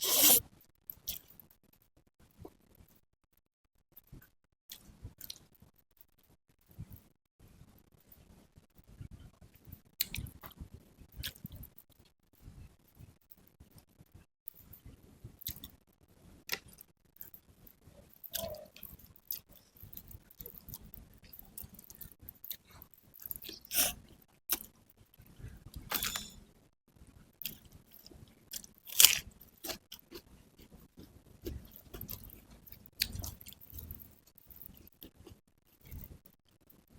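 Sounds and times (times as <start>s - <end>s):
wet mouth clicks: 0.0s - 0.4s
close chewing and crunching: 18.1s - 25.8s, 27.4s - 36.6s.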